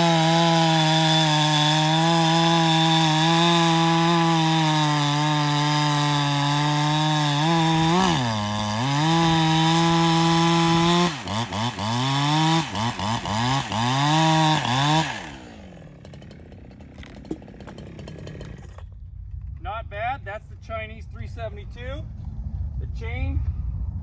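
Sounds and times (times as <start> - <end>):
chainsaw cutting wood: 0.0 - 19.0.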